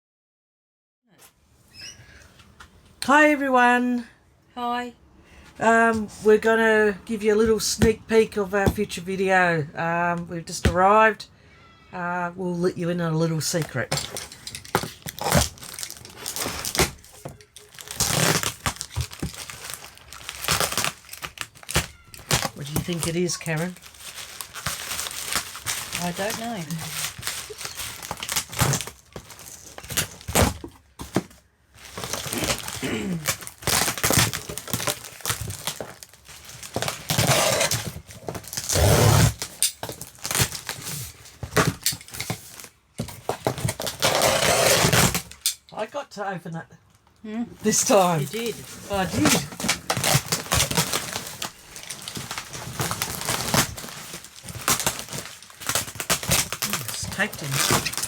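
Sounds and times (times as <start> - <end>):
packaging crinkling and rustling: 13.3 - 45.6, 47.6 - 58.0.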